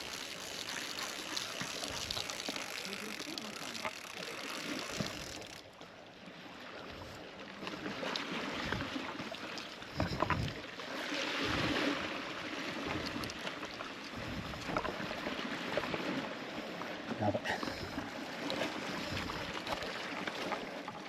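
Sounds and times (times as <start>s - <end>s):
wash of water: 0.0s - 5.6s
sea water lapping: 0.0s - 21.0s.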